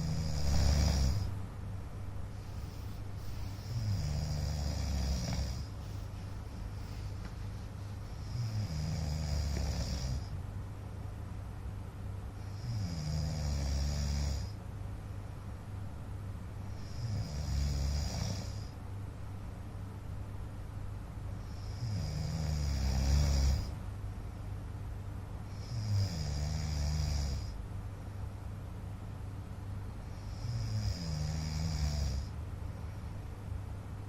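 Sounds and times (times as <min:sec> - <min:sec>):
man snoring: 0:00.0 - 0:01.3, 0:02.4 - 0:05.7, 0:08.1 - 0:10.4, 0:12.4 - 0:14.6, 0:16.7 - 0:18.8, 0:21.5 - 0:23.8, 0:25.5 - 0:27.6, 0:30.1 - 0:32.3
steady low hum: 0:00.0 - 0:34.0.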